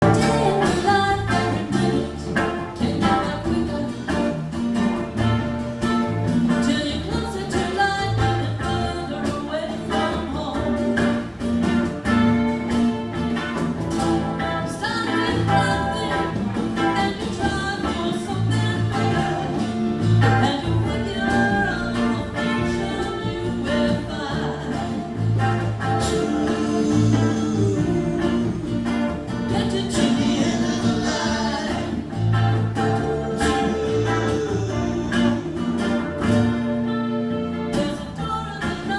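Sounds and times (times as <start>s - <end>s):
singing: 0.0s - 3.9s, 20.4s - 36.2s
band playing a song: 0.0s - 38.9s.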